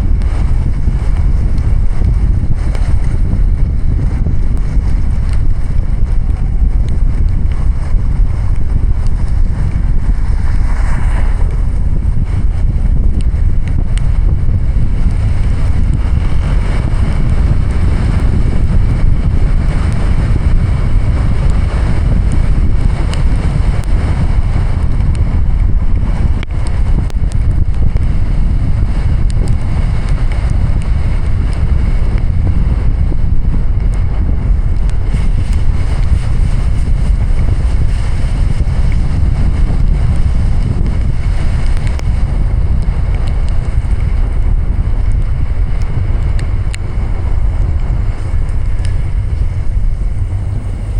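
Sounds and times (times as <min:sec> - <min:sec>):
tyres on wet road: 0:06.7 - 0:13.2.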